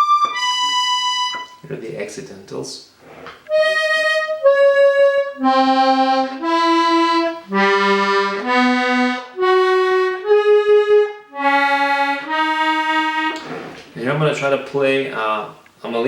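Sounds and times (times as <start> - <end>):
accordion single held notes: 0.0 - 1.7, 3.5 - 13.8.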